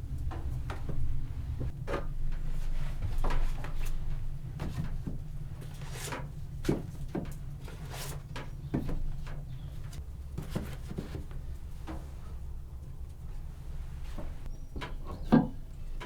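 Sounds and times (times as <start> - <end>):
steady low rumble: 0.0 - 2.3.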